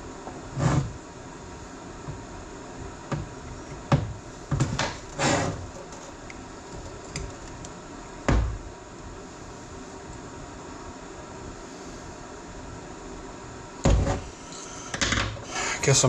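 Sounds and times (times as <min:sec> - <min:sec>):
steady background hum: 0:00.0 - 0:16.0.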